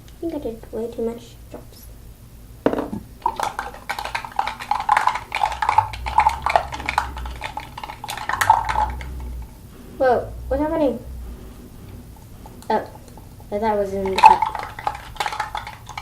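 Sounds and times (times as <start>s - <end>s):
knock: 2.6s - 3.0s
slime squelching: 3.0s - 16.0s.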